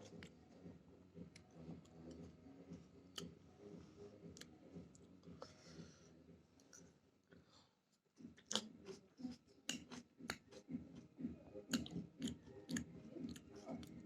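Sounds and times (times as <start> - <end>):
sharp mouth clicks: 8.4 - 8.7, 9.7 - 10.6, 11.7 - 14.0
person chewing tomato: 8.4 - 14.0.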